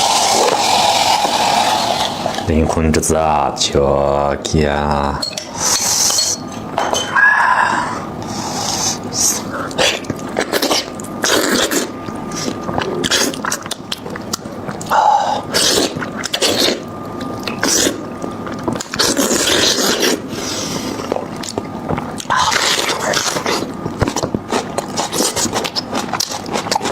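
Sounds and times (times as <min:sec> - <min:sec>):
wet chewing and smacking: 0:08.2 - 0:26.9.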